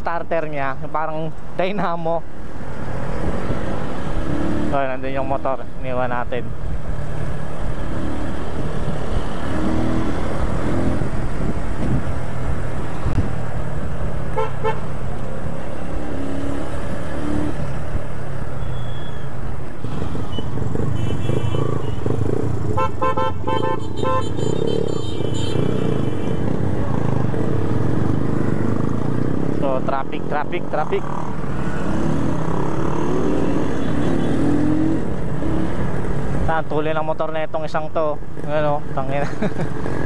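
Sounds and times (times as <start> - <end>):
motorcycle engine and wind rumble: 6.4 - 14.3, 19.3 - 23.0
vehicle horns beeping: 14.4 - 14.9, 18.6 - 19.2, 20.3 - 22.1, 22.8 - 26.4.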